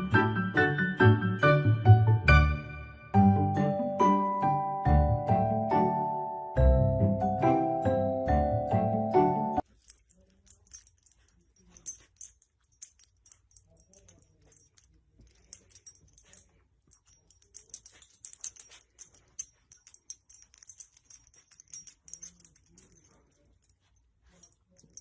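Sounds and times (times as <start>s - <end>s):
faint jingling: 9.6s - 25.0s.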